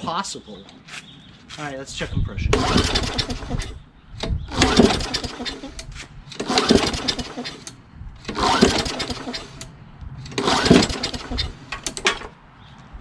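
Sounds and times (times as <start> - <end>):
mower engine cranked by pull rope: 2.5 - 12.3.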